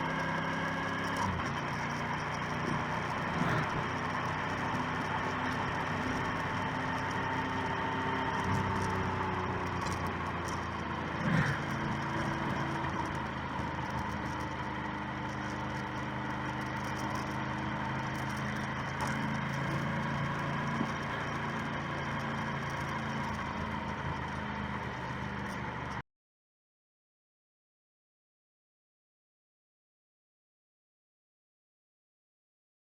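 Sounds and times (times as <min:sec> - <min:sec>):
motorcycle engine running: 0:00.0 - 0:26.0
wind and road noise: 0:00.0 - 0:26.0.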